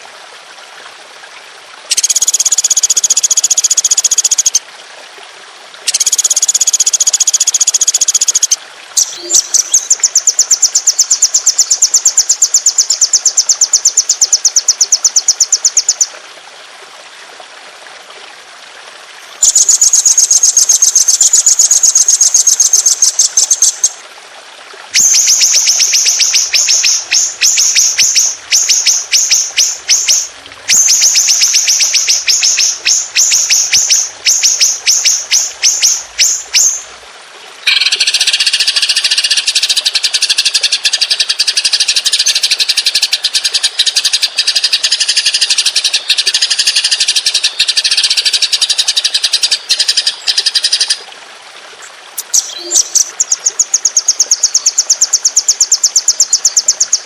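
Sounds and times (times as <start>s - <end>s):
songbird chirping and trilling: 5.9s - 16.1s, 19.2s - 24.0s, 25.0s - 36.9s, 52.2s - 57.0s.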